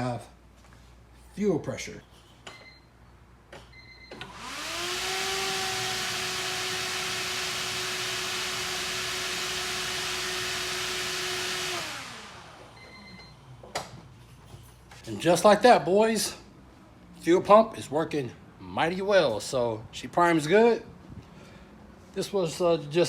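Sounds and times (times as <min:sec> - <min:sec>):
electric fuel pump whining: 0:04.1 - 0:13.7.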